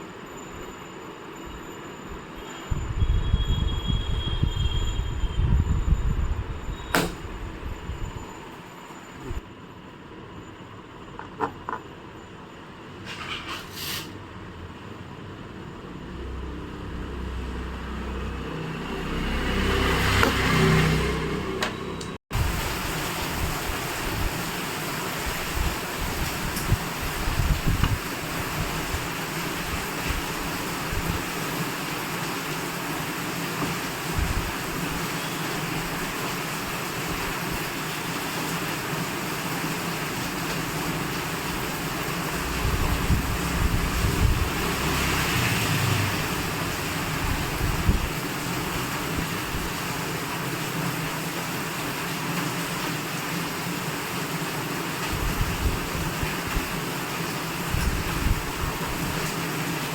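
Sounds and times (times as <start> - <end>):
wind buffeting microphone: 25.3 - 29.1, 42.4 - 45.4, 46.2 - 49.8, 55.1 - 56.8, 57.7 - 59.2.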